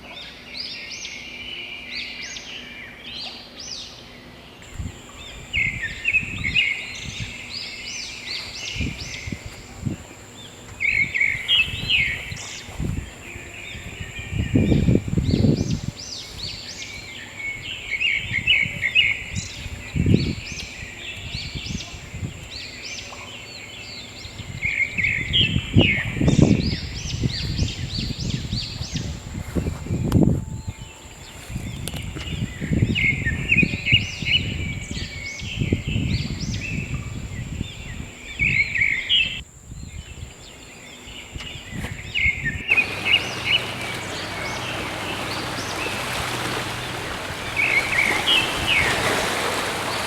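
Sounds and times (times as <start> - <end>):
birds chirping: 4.7 - 21.6, 42.6 - 50.0.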